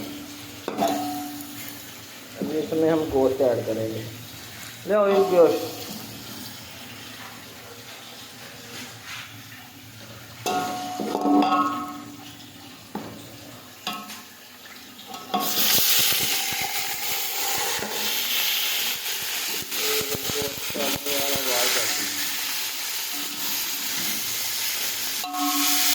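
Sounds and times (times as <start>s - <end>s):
pot and utensils clanking: 0.0s - 1.7s, 10.4s - 14.3s, 15.0s - 22.3s, 25.2s - 25.9s
meat sizzling in hot oil: 0.0s - 25.9s.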